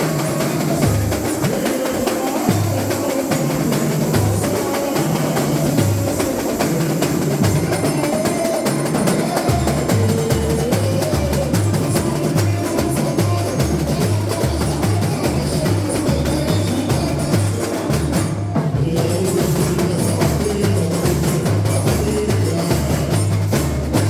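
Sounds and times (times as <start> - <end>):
deep bass drums: 9.5 - 18.2.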